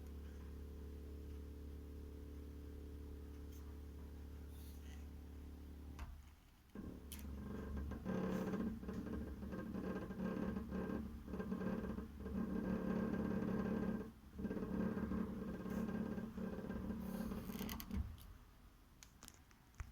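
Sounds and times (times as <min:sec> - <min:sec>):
radiator buzzing hum: 0:00.0 - 0:18.8.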